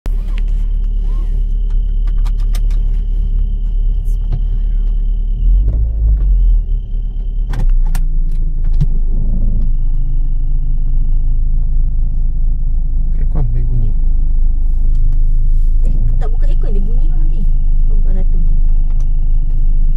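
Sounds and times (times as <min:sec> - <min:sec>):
car engine low rumble: 0:00.0 - 0:19.9
sharp clicks and rattles: 0:00.3 - 0:10.4.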